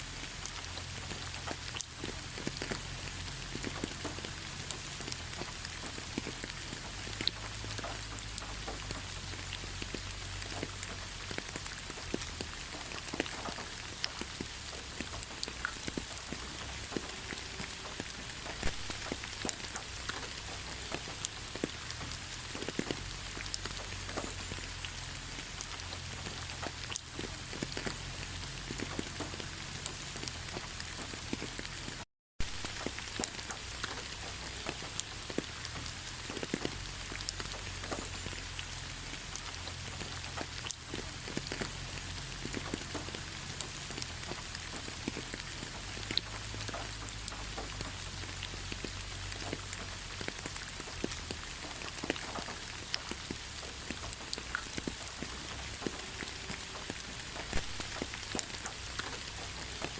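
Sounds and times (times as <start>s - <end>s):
gentle rain pattering: 0.0s - 59.9s.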